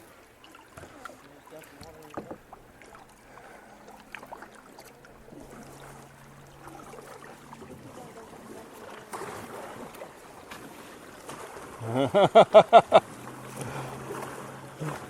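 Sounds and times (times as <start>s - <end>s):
paddles knocking against boats: 0.0s - 11.7s
paddle splashes and drips: 0.0s - 15.0s
rush of water: 0.0s - 15.0s.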